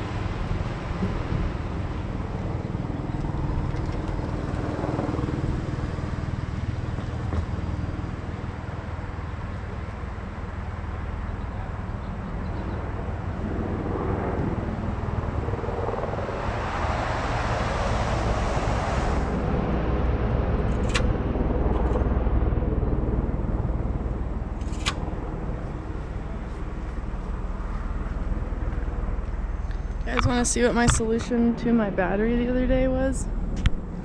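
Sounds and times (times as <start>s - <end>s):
low street rumble: 0.0s - 34.0s
vehicle passing by: 15.2s - 22.0s
sharp clicks: 20.7s - 21.1s, 24.6s - 25.1s.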